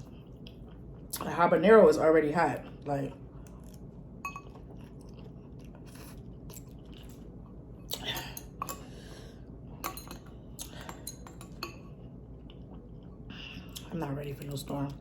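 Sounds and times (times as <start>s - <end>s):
person chewing noodles: 0.0s - 1.2s, 2.6s - 9.6s, 10.4s - 13.9s
steady low hum: 0.0s - 15.0s.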